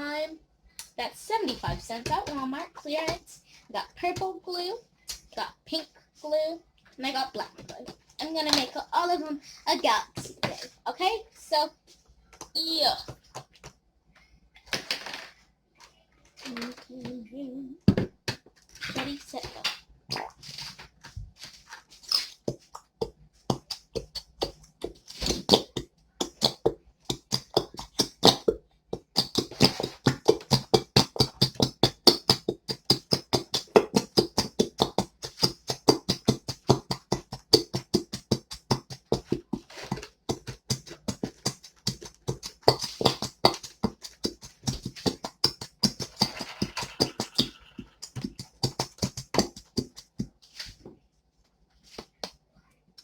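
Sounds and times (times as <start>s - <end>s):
slime squelching: 18.8s - 50.7s.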